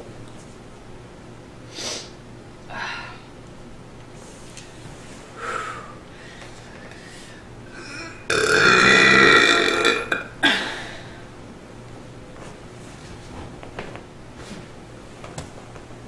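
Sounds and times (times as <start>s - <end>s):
woman belching: 7.8s - 10.6s.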